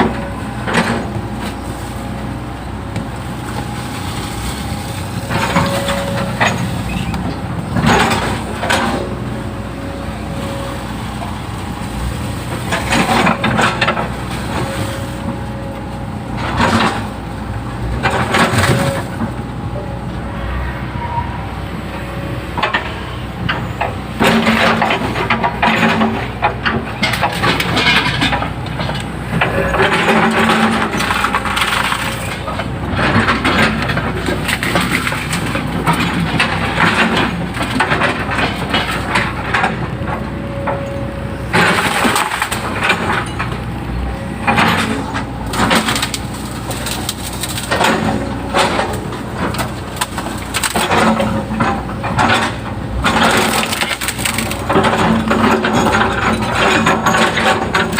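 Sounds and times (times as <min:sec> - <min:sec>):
excavator diesel engine: 0:00.0 - 0:57.9
bucket crunching soil and debris: 0:44.5 - 0:51.6.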